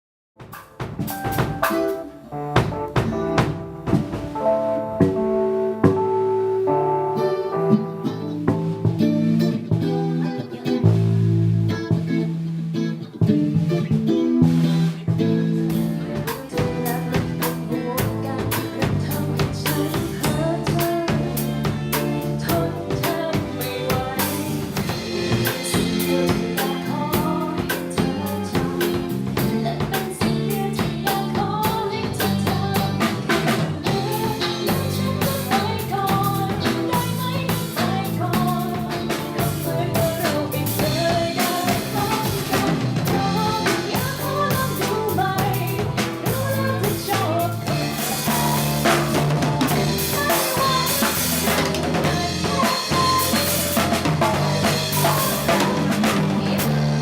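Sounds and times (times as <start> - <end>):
drum kit with rimshots: 0.4 - 57.0
live band playing: 0.4 - 57.0
wavering lead melody: 1.1 - 12.4.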